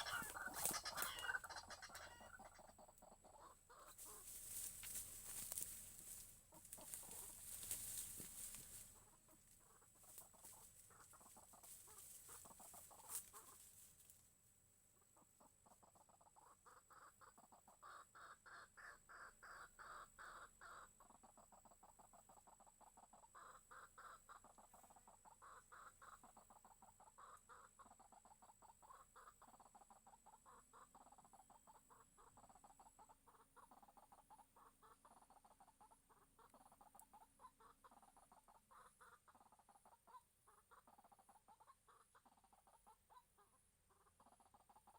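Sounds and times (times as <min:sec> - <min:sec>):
faint clucking bird calls: 0:00.0 - 0:44.9
rustling noise: 0:03.9 - 0:09.0.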